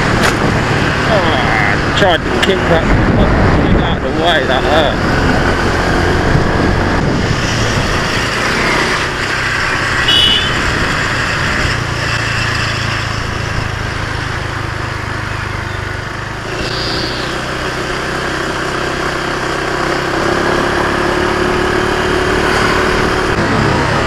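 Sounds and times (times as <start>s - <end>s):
wind rush: 0.0s - 14.1s
small motorcycle engine running: 4.1s - 24.0s.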